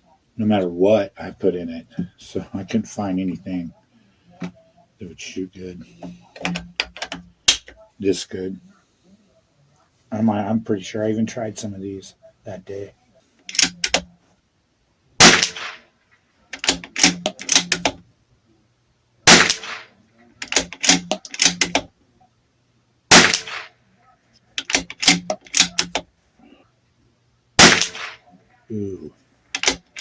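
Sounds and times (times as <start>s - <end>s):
rifle bolt clicking: 13.5s - 14.1s, 16.6s - 18.0s, 20.4s - 21.9s, 24.6s - 26.0s, 29.6s - 30.0s
rifle shots with echo: 15.2s - 15.8s, 16.6s - 17.8s, 19.3s - 19.9s, 23.1s - 23.8s, 27.6s - 28.2s.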